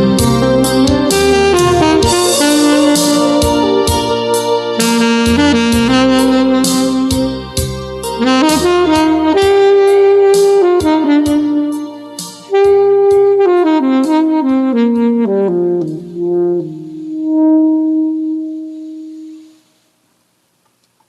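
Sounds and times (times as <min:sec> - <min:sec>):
backing track with percussion: 0:00.0 - 0:16.3
alto saxophone ballad melody: 0:00.0 - 0:19.8.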